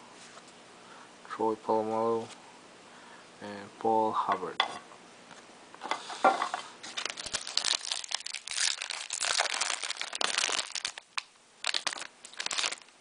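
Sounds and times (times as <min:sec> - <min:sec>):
plastic wrapper crinkling and tearing: 0:06.9 - 0:13.0.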